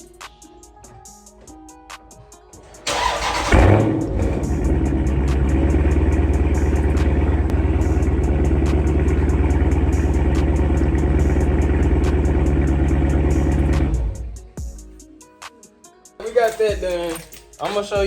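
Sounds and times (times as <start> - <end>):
car engine idling loudly: 2.9 - 14.4.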